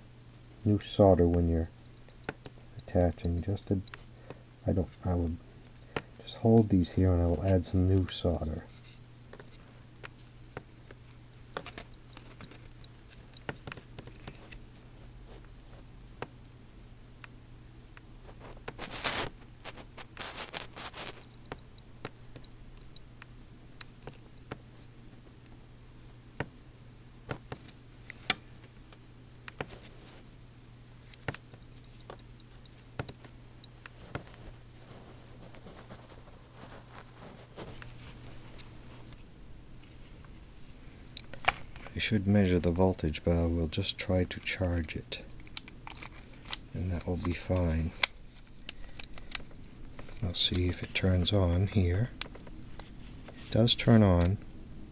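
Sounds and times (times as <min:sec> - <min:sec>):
steady low hum: 0:00.0 - 0:54.9
small tools clicking and tapping: 0:01.3 - 0:04.1, 0:31.1 - 0:34.2.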